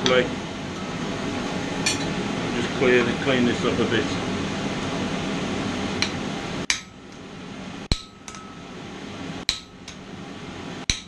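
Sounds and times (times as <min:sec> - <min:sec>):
steady rushing noise: 0:00.4 - 0:06.7
hammer striking metal on anvil: 0:06.0 - 0:07.0, 0:07.9 - 0:08.7, 0:09.5 - 0:10.0.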